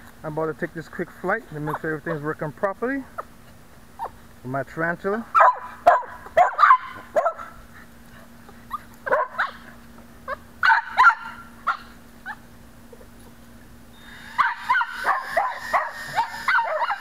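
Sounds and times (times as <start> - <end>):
dog barking and yipping: 5.3 - 7.6, 8.7 - 9.7, 10.3 - 12.4, 14.2 - 17.0.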